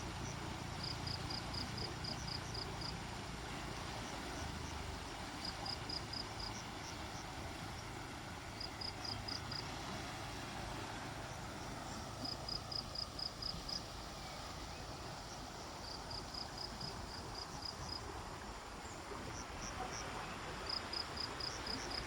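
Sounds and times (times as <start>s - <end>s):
steady background hiss: 0.0s - 22.0s.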